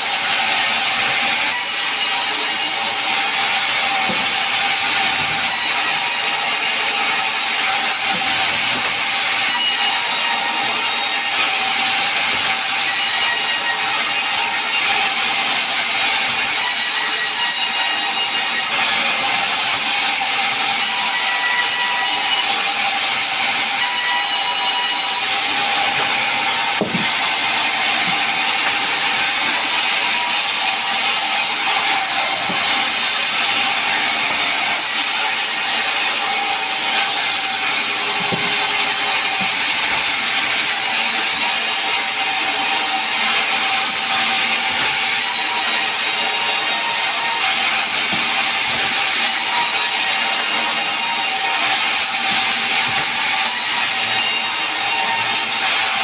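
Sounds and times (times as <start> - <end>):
sawmill saw cutting wood: 0.0 - 56.0.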